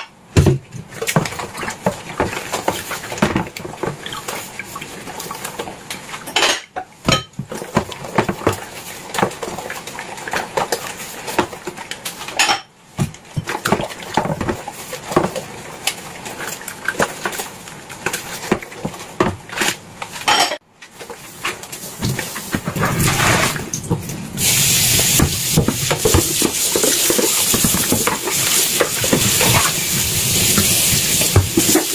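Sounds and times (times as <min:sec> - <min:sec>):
dishes and cutlery clinking: 0:06.3 - 0:07.4, 0:19.6 - 0:20.6.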